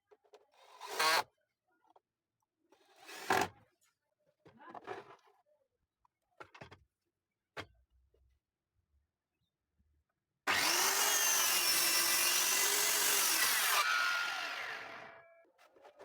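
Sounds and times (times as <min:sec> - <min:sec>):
circular saw cutting wood: 0:10.5 - 0:15.4.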